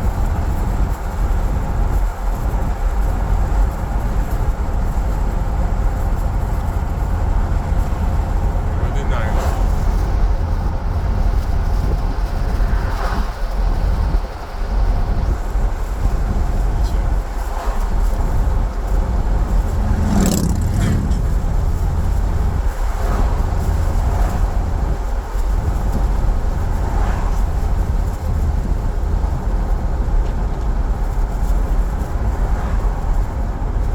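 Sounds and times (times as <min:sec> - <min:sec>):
car road rumble from inside: 0:00.0 - 0:33.9
whoosh: 0:06.6 - 0:13.5.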